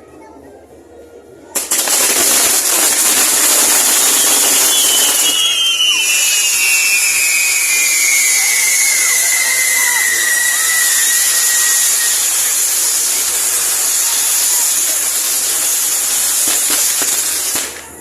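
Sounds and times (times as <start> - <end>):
fireworks hissing: 1.6 - 18.0
whistling tone sliding down: 3.9 - 12.3.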